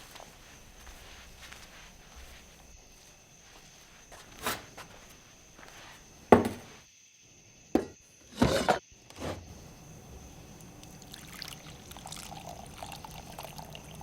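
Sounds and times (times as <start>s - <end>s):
kitchen things knocking: 6.3s - 6.7s, 7.8s - 9.4s.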